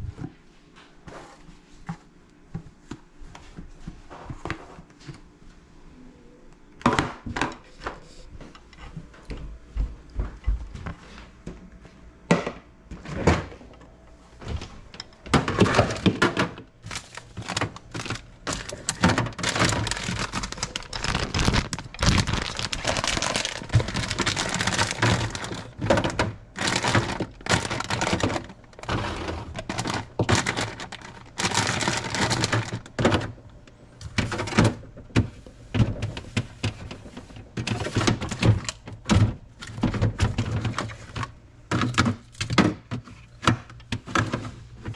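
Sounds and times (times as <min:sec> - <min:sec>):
rustling and crinkling: 0:14.2 - 0:44.9.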